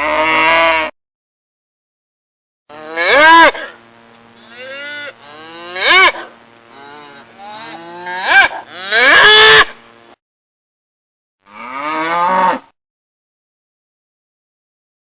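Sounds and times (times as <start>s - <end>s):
cattle mooing: 0.0s - 0.9s, 4.4s - 9.7s, 11.5s - 12.7s.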